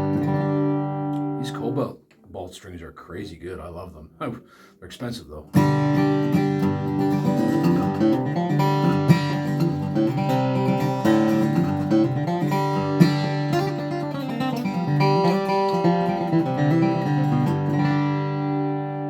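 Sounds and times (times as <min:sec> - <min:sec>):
acoustic guitar picked and strummed: 0:00.0 - 0:02.5, 0:04.2 - 0:19.0.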